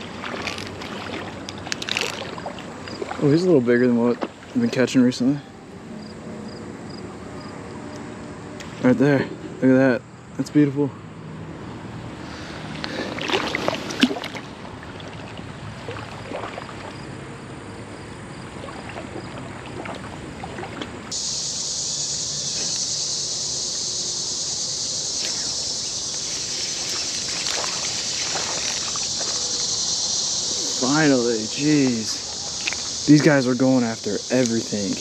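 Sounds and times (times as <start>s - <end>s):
splashes and clicks: 0.0s - 3.4s, 12.8s - 17.1s, 18.1s - 21.2s, 26.2s - 29.8s, 32.4s - 33.3s
creek water: 0.0s - 35.0s
low road traffic hum: 0.0s - 35.0s
high-pitched insect drone: 21.1s - 35.0s.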